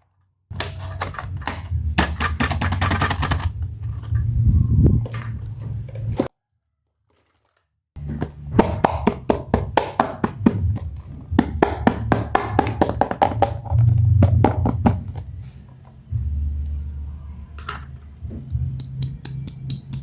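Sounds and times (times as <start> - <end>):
plastic toy pieces clicking: 0.6 - 3.6.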